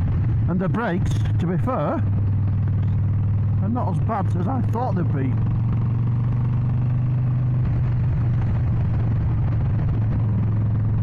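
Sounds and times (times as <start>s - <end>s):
motorcycle exhaust burbling: 1.9s - 4.1s.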